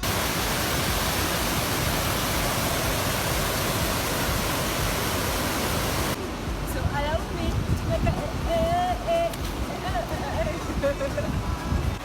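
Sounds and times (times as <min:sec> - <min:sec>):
waterfall rushing: 0:00.0 - 0:07.4.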